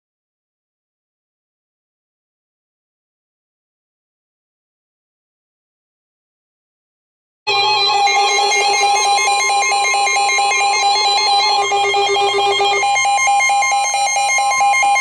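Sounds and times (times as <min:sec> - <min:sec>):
pulsing electronic alarm: 0:07.5 - 0:15.0.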